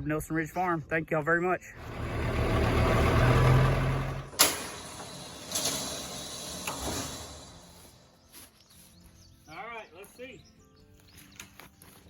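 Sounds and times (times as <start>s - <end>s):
vehicle engine running: 1.8s - 8.1s.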